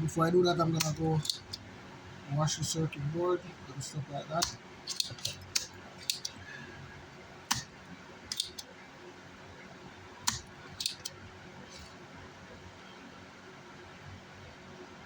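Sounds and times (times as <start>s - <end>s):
small tools clicking on workbench: 0.8s - 1.6s, 4.4s - 6.4s, 8.3s - 8.6s, 10.3s - 11.1s.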